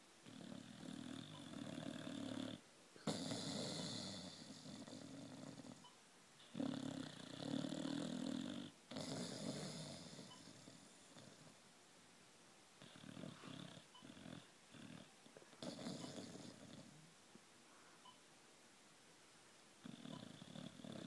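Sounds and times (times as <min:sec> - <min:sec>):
dog snoring: 0:00.2 - 0:11.6, 0:12.8 - 0:17.0, 0:19.8 - 0:21.0.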